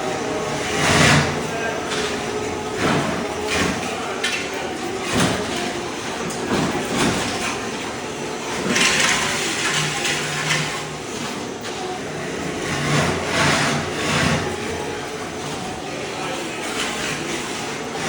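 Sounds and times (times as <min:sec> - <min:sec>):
low machine hum: 0:00.0 - 0:18.0
harsh gritty scraping: 0:12.1 - 0:18.0.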